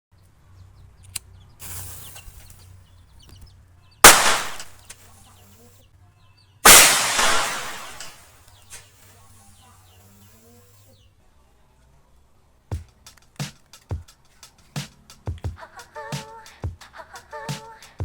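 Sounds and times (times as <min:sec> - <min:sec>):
firecracker hissing: 0:01.6 - 0:02.9, 0:04.0 - 0:05.6, 0:06.6 - 0:10.9
firecracker bangs: 0:04.0 - 0:04.9, 0:06.6 - 0:08.3.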